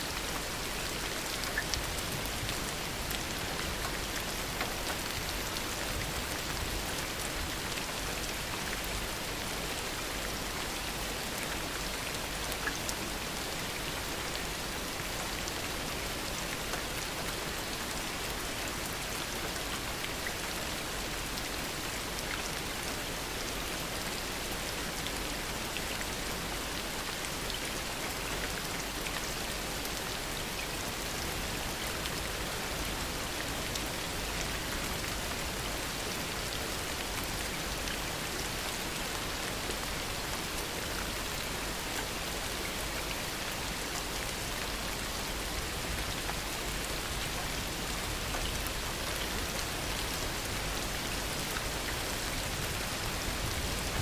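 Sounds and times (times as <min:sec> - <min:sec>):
raindrops ticking on surfaces: 0:00.1 - 0:54.0
heavy rain falling: 0:21.1 - 0:54.0.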